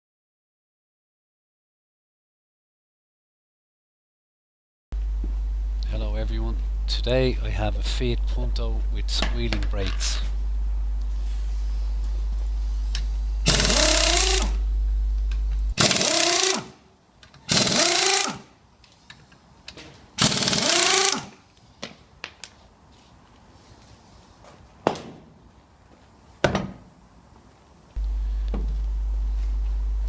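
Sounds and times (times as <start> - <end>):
impact wrench bursts: 12.8 - 14.7, 15.6 - 16.8, 17.4 - 18.5, 20.2 - 21.4.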